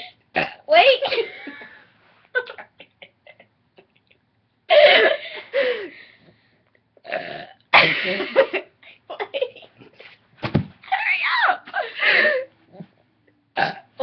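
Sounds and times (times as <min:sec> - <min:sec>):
person burping: 0:00.4 - 0:00.6, 0:07.0 - 0:08.0, 0:13.6 - 0:14.0.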